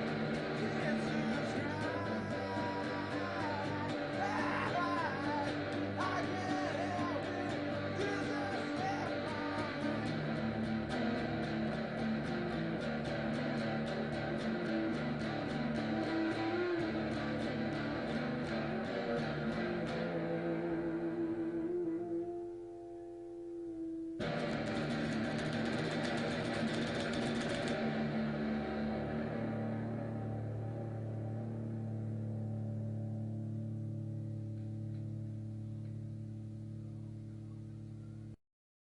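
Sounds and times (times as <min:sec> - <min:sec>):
guitar: 0:00.0 - 0:38.4
wavering voice-like melody: 0:00.5 - 0:10.2.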